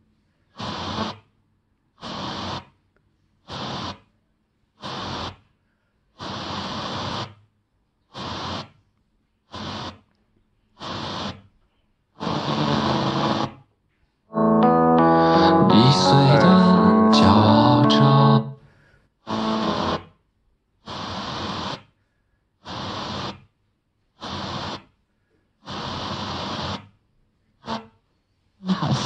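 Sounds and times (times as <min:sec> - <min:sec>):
radio tuning between stations: 0:00.6 - 0:01.2, 0:02.0 - 0:02.7, 0:03.5 - 0:04.0, 0:10.8 - 0:11.4, 0:12.2 - 0:13.6, 0:14.3 - 0:18.6, 0:19.3 - 0:20.1, 0:28.6 - 0:29.0
piano music on radio: 0:12.2 - 0:13.6, 0:14.3 - 0:18.6, 0:19.3 - 0:20.1.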